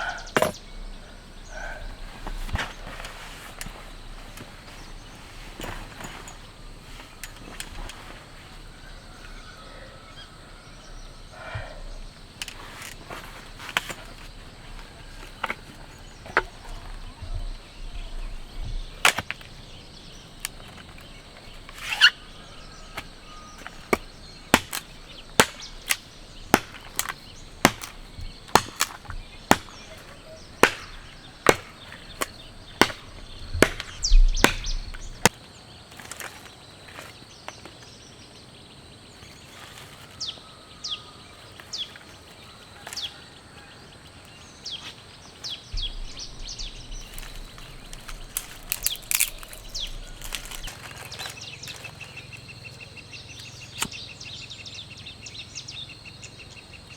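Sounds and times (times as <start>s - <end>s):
sharp knocks: 23.0s - 35.3s.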